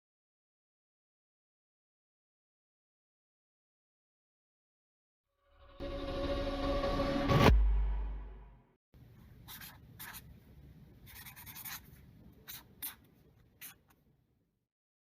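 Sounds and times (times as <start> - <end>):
faint scratching strokes: 11.0 - 14.0.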